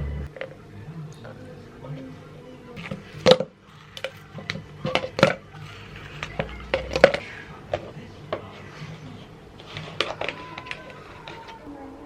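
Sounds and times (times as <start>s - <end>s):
hard objects knocking and clinking: 2.8s - 8.5s, 9.7s - 11.6s.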